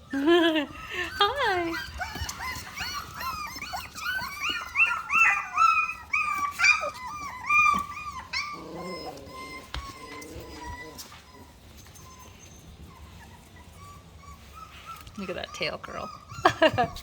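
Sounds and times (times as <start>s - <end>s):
puppies whimpering and squealing: 0.0s - 17.0s.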